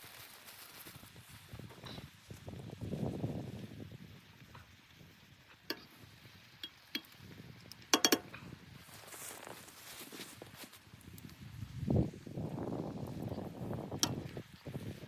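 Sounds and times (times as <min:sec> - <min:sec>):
soft crunching and rustling: 0:00.0 - 0:03.8, 0:08.3 - 0:15.0.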